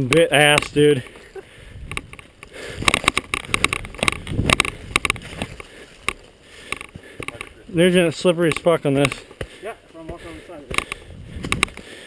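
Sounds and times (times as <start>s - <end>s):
gear knocking and rattling: 1.8s - 7.5s
footsteps scuffing on slippery ground: 2.2s - 12.0s.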